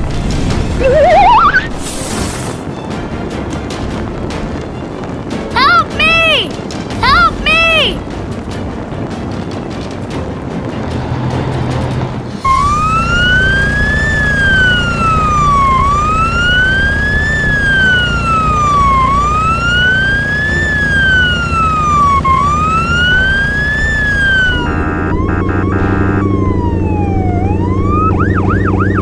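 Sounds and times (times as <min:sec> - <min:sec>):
low engine rumble: 0:08.0 - 0:29.0
wailing siren: 0:12.4 - 0:29.0.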